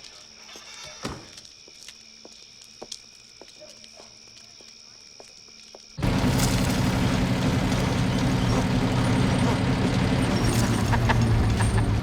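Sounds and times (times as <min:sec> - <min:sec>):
truck engine droning: 0:06.0 - 0:12.0.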